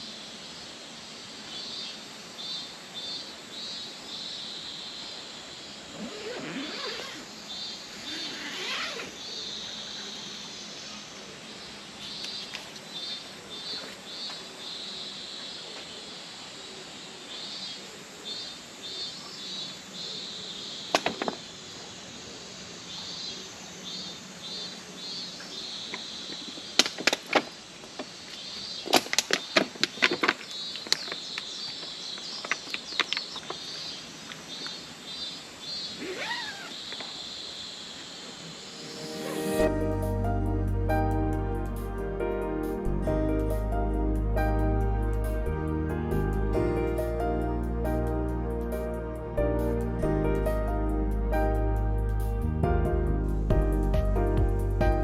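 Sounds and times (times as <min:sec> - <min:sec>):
insects chirping in rapid pulses: 0:00.0 - 0:42.8.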